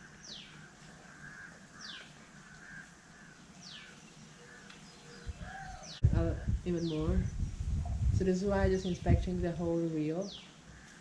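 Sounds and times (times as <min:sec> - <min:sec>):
crow-like cawing: 0:00.0 - 0:05.9, 0:10.6 - 0:11.0.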